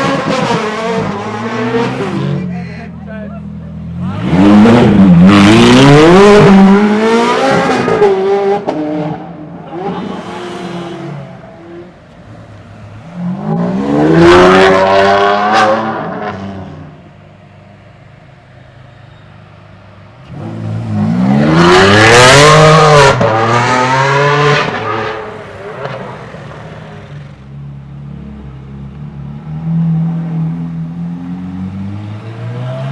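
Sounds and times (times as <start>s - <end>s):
car engine accelerating hard: 3.9s - 11.9s, 13.0s - 16.9s, 20.2s - 27.4s.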